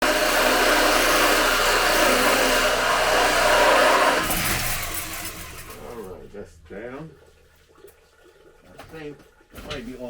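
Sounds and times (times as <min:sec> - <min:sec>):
small motor whirring: 0:00.0 - 0:06.1.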